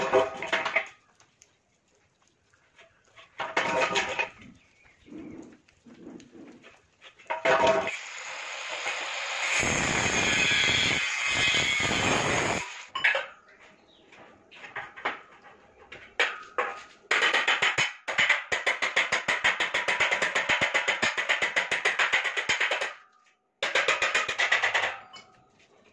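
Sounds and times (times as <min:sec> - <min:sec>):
metal pipe knocks and clanks: 0:03.4 - 0:04.4, 0:07.3 - 0:07.9, 0:23.6 - 0:25.4
power cutter cutting steel pipe: 0:07.8 - 0:12.9.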